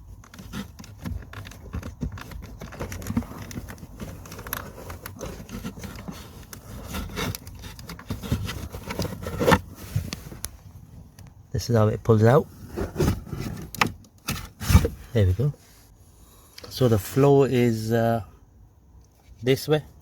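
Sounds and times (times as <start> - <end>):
filter scraping against plastic: 0.0 - 10.5, 12.6 - 15.4.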